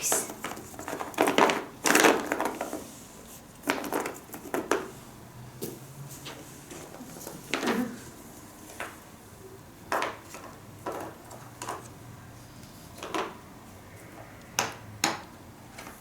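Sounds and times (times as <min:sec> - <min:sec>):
small hard objects knocking: 0:00.2 - 0:02.7, 0:03.6 - 0:04.9, 0:09.9 - 0:11.8, 0:13.0 - 0:13.4.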